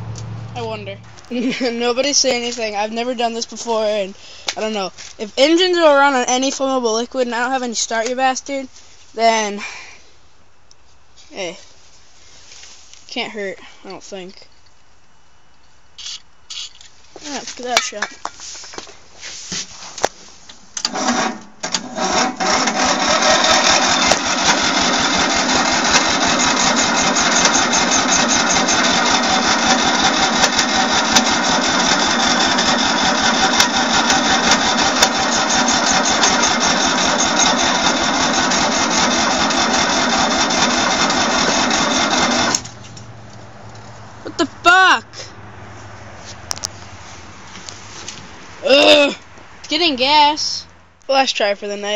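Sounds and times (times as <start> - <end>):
engine cranking with starter: 20.8 - 43.1.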